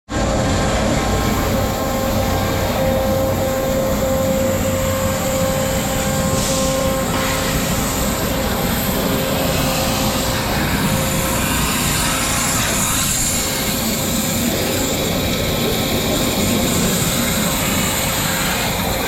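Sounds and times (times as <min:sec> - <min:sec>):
waterjet cutter running: 0:00.1 - 0:19.0
burst of hiss: 0:05.6 - 0:14.9.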